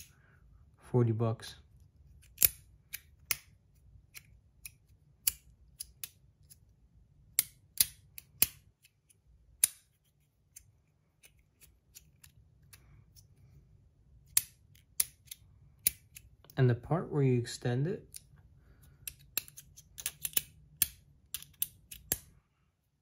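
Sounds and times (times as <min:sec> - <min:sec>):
metallic clicks of sliding magnets: 0:02.1 - 0:06.7, 0:07.3 - 0:13.4, 0:14.2 - 0:16.6, 0:18.1 - 0:22.4.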